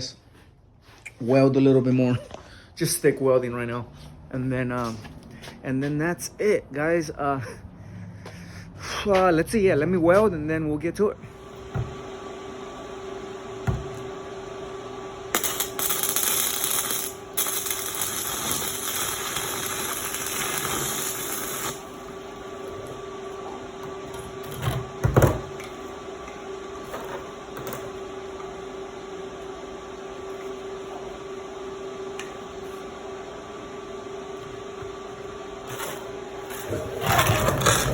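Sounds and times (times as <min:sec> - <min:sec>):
steady hum: 0:10.4 - 0:37.9
welding arc crackling and hissing: 0:15.2 - 0:25.7.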